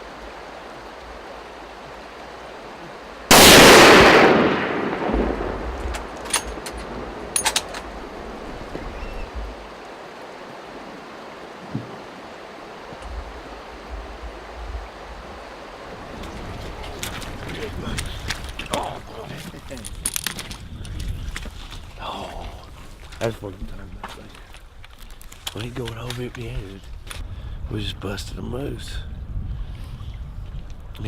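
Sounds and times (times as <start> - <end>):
rifle shot: 3.3 - 6.2.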